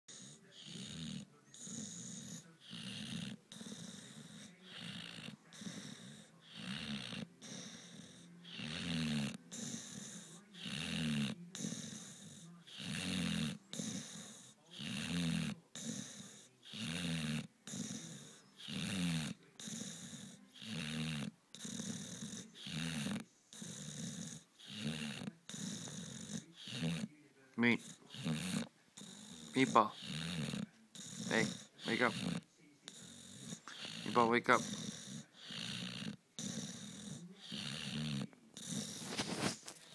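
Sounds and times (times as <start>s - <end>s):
dog snoring: 0.1s - 39.9s.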